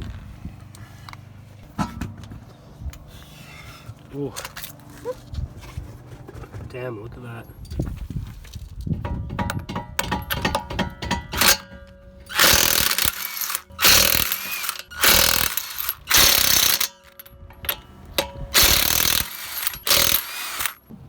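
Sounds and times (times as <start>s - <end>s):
impact wrench hammering: 9.0s - 20.8s.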